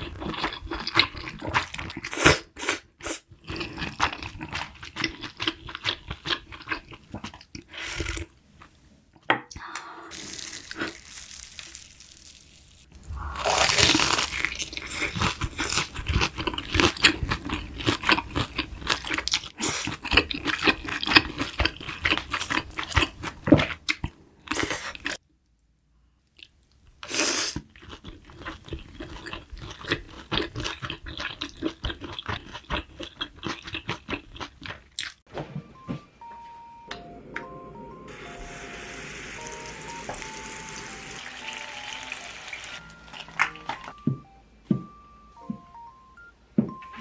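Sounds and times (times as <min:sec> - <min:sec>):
loud bite: 0:13.2 - 0:15.2
stepped tone tune: 0:35.5 - 0:47.0.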